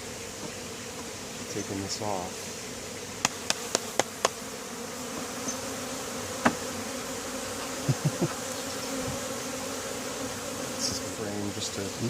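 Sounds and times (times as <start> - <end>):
bees buzzing: 0.0 - 12.0
dull knocks on hive: 3.2 - 4.5, 6.3 - 6.7.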